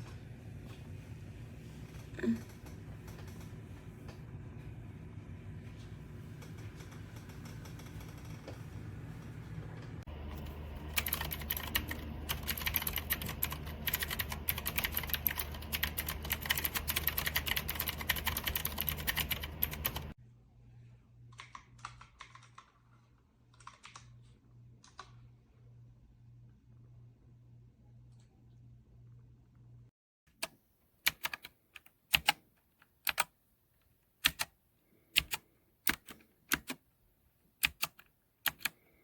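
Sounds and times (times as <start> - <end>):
mechanical keyboard typing: 10.3 - 20.2, 21.3 - 22.8, 23.5 - 24.2, 30.4 - 33.4, 34.2 - 34.5, 35.2 - 36.8, 37.6 - 38.8.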